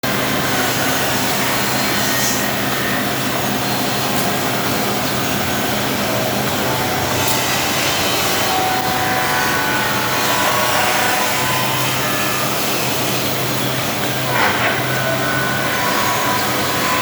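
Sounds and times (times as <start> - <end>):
drilling machine motor hum: 4.4 - 17.0.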